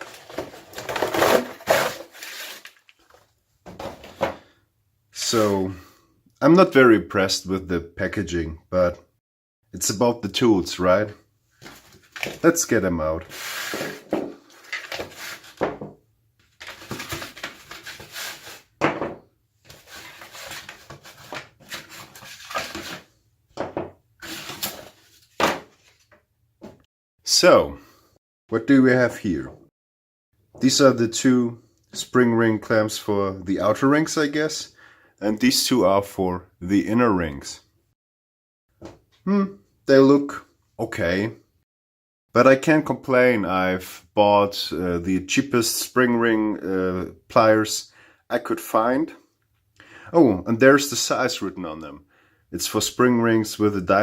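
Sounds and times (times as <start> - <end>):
packaging rubbing and scraping: 0.0 - 3.2, 13.3 - 15.6, 16.6 - 18.7, 19.7 - 23.1, 24.2 - 26.0
cardboard box rustling: 0.0 - 4.4, 13.3 - 15.7, 16.6 - 18.6, 19.7 - 23.0, 24.2 - 26.0.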